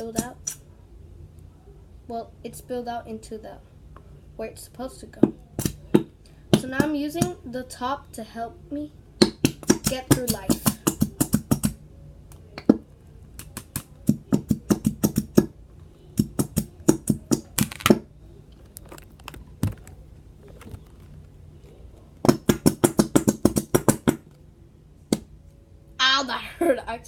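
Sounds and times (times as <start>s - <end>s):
tapping plastic glue bottle: 9.2s - 11.8s, 13.4s - 15.5s, 16.2s - 18.1s, 22.2s - 24.2s.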